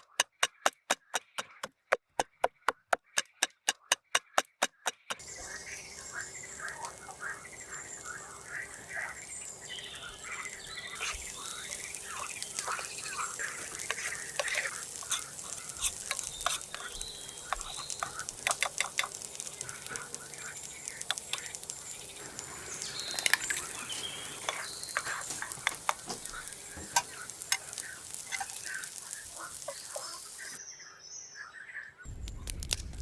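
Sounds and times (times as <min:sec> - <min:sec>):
food sizzling in a pan: 0:05.2 - 0:30.6
utensil scraping a pan: 0:12.1 - 0:20.0, 0:22.8 - 0:30.2.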